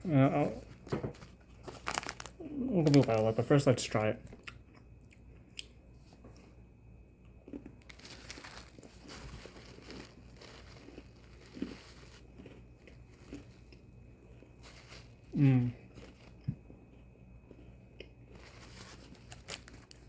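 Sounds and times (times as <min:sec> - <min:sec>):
crunching and chewing cookie: 0:00.0 - 0:20.0
wrapper crinkling: 0:00.4 - 0:03.7, 0:07.8 - 0:13.8, 0:14.6 - 0:16.4, 0:18.3 - 0:20.0
person humming mm: 0:15.3 - 0:15.8.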